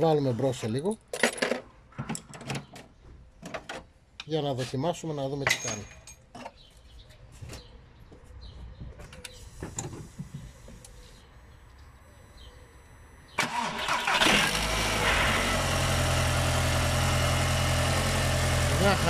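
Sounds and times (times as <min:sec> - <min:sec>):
car engine starting and idling: 0:13.4 - 0:19.0.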